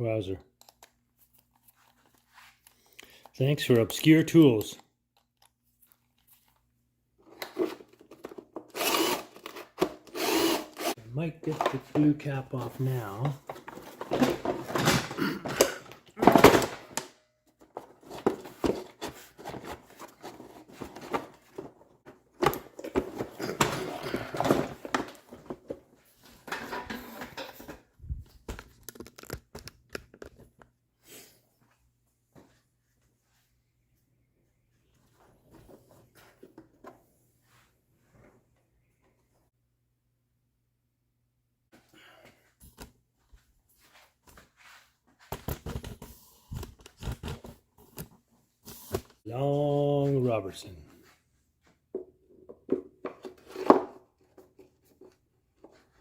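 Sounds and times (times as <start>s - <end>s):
screwdriver clicking and scraping: 8.6s - 11.0s.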